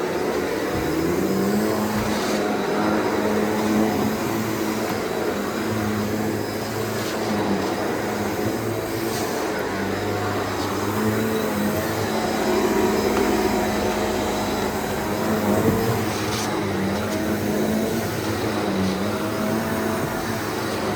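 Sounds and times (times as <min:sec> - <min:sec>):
vacuum cleaner running on carpet: 0:00.0 - 0:20.9.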